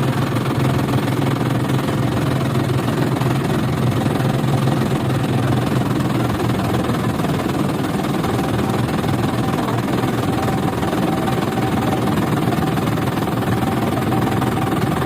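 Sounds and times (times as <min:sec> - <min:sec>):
engine running steadily: 0:00.0 - 0:15.0.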